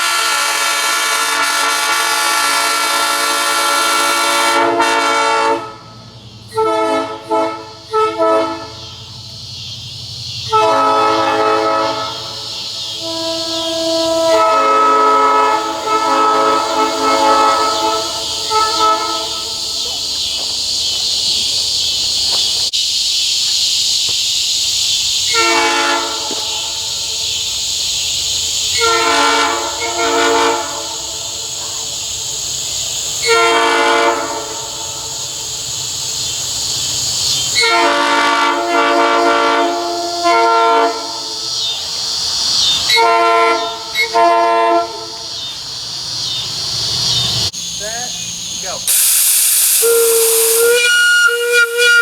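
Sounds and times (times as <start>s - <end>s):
locomotive air horn blasts: 0.0s - 8.9s, 10.5s - 19.6s, 25.3s - 26.8s, 28.7s - 31.4s, 33.2s - 35.0s, 37.6s - 41.3s, 42.9s - 45.2s, 48.9s - 52.0s
insects buzzing: 0.1s - 52.0s.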